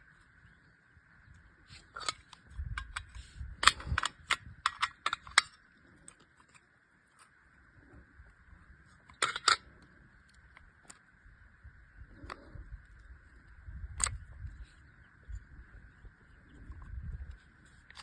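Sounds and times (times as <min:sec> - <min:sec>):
pistol parts clicking: 0:01.8 - 0:07.3, 0:09.0 - 0:09.8, 0:14.0 - 0:14.2.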